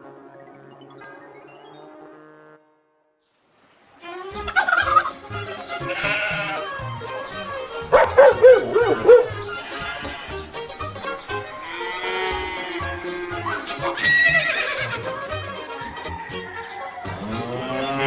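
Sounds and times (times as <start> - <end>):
background music: 4.1 - 18.0
farm animal calls: 4.4 - 15.1
wavering bleat: 5.8 - 6.7.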